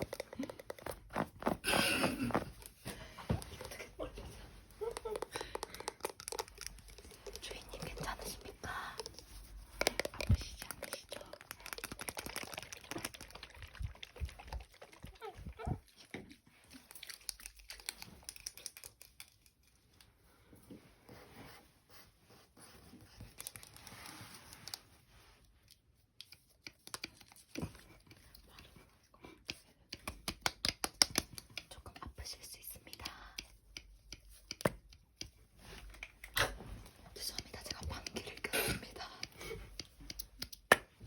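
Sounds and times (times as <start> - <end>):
handling clicks crinkles and rustles: 4.8 - 13.3.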